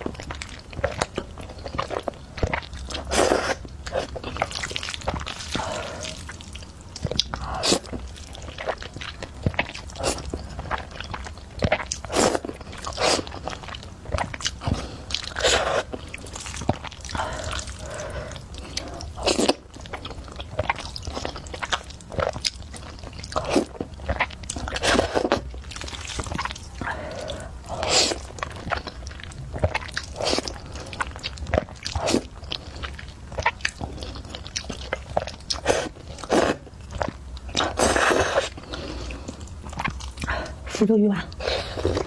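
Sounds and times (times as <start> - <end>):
wet bites and chewing: 0.0 - 40.6
noodle slurps: 2.9 - 6.4, 7.4 - 8.1, 11.9 - 13.6, 14.4 - 19.6, 23.4 - 28.9, 30.1 - 31.1, 35.6 - 36.6, 37.6 - 39.2.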